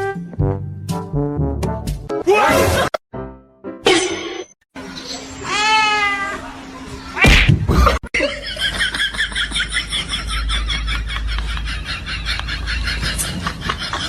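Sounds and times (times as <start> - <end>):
cat meowing: 5.4 - 6.5.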